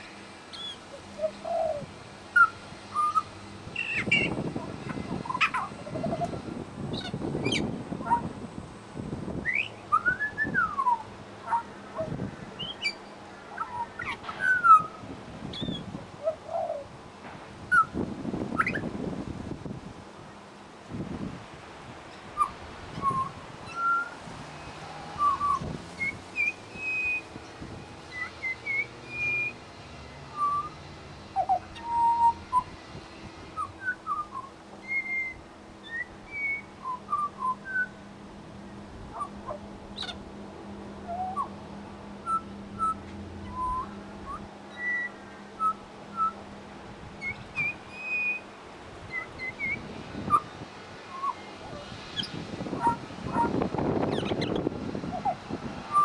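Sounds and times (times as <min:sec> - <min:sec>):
bird whistling song: 0:00.0 - 0:08.3, 0:09.4 - 0:16.9, 0:17.7 - 0:18.9, 0:22.3 - 0:24.2, 0:25.2 - 0:27.4, 0:28.1 - 0:29.6, 0:30.2 - 0:32.8, 0:33.5 - 0:38.0, 0:39.1 - 0:40.2, 0:41.0 - 0:41.6, 0:42.2 - 0:46.4, 0:47.2 - 0:48.5, 0:49.1 - 0:50.5, 0:51.1 - 0:56.0.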